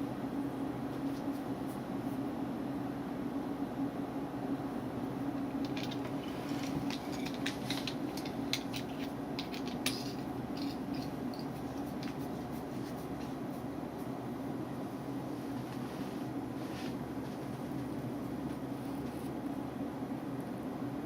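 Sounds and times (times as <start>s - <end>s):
scratchy handling noises: 5.4s - 14.2s.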